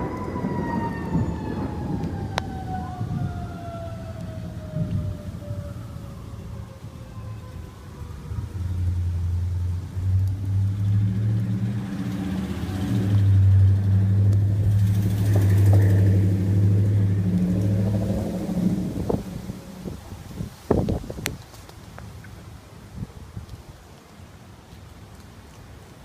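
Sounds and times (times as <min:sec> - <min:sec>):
long low rumble: 0:12.5 - 0:20.3.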